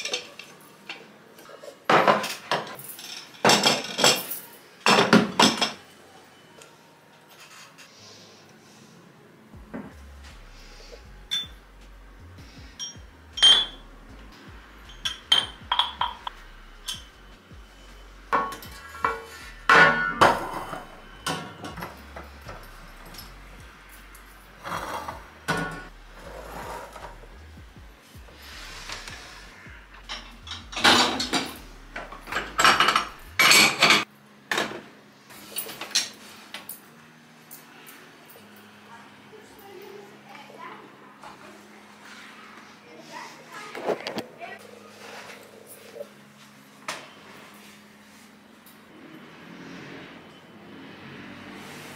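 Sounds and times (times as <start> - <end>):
dishes and cutlery clattering: 0.0 - 5.9, 12.8 - 13.8, 14.9 - 17.1, 18.3 - 23.3, 24.6 - 25.9, 30.1 - 34.8
glass kitchenware clinking: 11.3 - 11.5, 12.8 - 13.8, 14.9 - 17.1, 18.3 - 21.9, 30.1 - 34.0.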